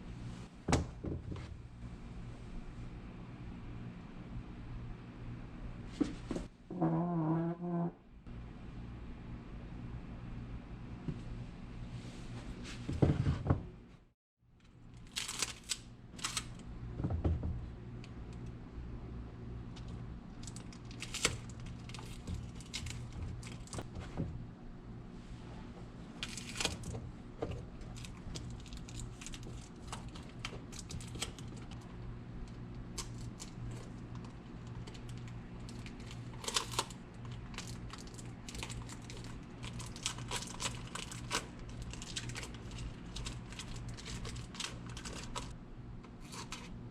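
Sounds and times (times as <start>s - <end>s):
material crinkling and tearing: 15.0s - 16.6s, 20.4s - 23.8s, 26.2s - 26.9s, 27.8s - 31.8s, 33.0s - 45.6s.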